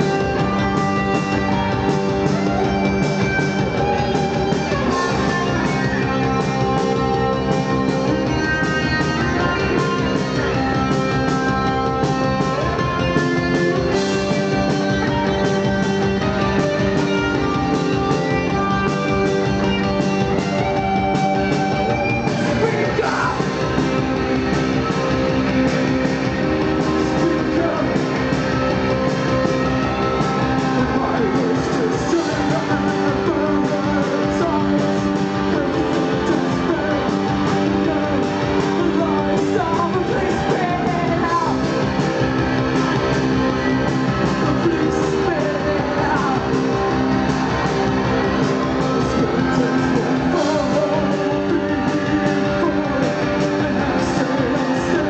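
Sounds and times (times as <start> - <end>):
live post-punk band playing: 0.0 - 55.0
person singing: 0.0 - 55.0.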